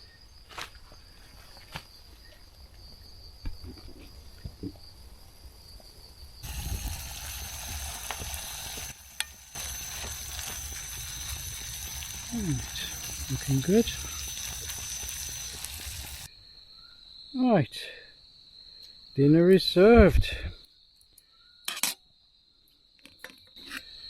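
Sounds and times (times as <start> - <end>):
insects trilling: 0.0 - 24.0
food sizzling in a frying pan: 6.4 - 16.3.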